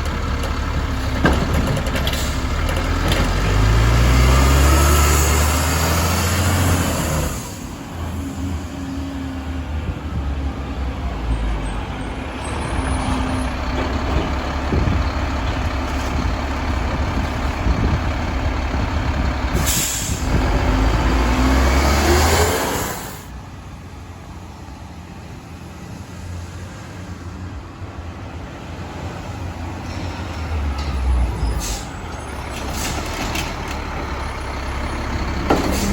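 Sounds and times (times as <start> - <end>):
truck engine rumbling: 0.0 - 35.9
loud air hiss: 19.6 - 20.3, 22.4 - 23.3.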